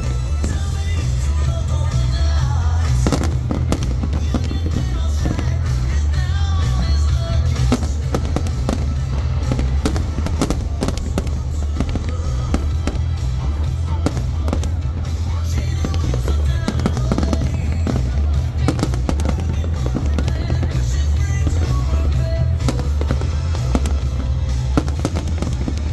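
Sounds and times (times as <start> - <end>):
fireworks bangs and crackles: 0.0 - 25.9
low rumble: 0.0 - 25.9
music playing: 0.0 - 25.9.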